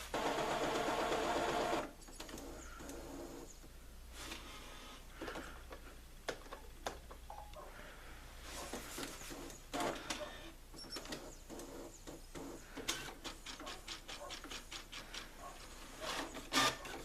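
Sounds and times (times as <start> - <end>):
printer clicking and whirring: 0.1 - 3.4, 9.3 - 10.2, 10.8 - 15.2, 16.1 - 17.0.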